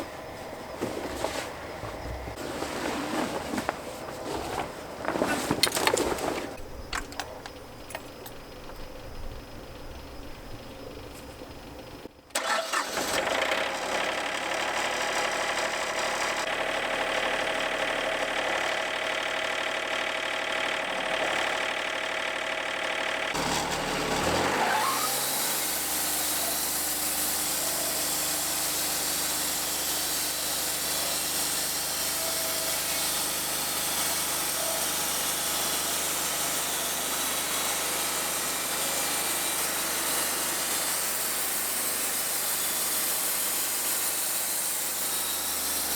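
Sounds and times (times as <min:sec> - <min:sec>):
sawmill engine running: 0:06.3 - 0:45.9.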